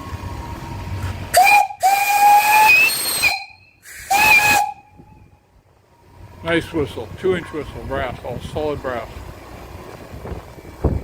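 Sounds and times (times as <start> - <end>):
hissing steam: 1.3 - 4.8
steam whistle blasts: 1.3 - 5.3.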